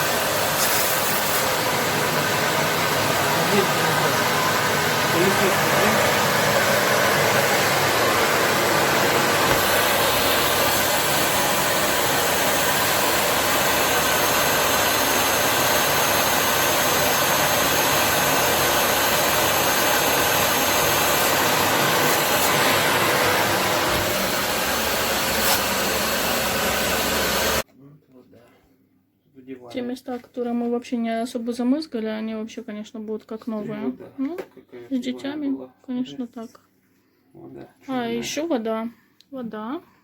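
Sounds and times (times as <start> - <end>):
washing vacuum cleaner running: 0.0 - 27.6.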